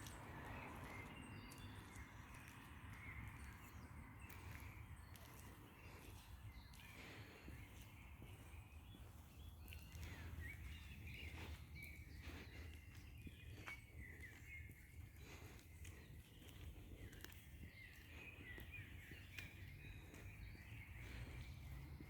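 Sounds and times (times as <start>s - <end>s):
small birds chirping and calling: 0.0s - 22.0s.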